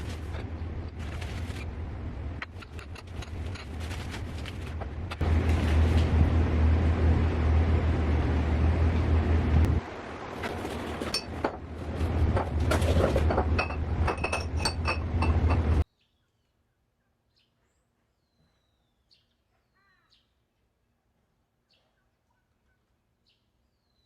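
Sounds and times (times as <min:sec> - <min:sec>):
steady low rumble: 0:00.0 - 0:15.8
dishes clinking: 0:11.0 - 0:11.6, 0:12.2 - 0:15.8
faint bird chirps: 0:15.9 - 0:20.4.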